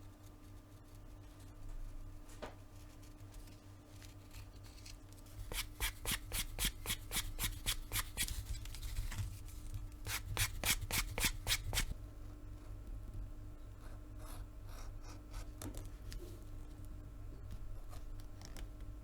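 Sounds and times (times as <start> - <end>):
hand rubbing leather: 5.4 - 8.9, 10.0 - 11.9.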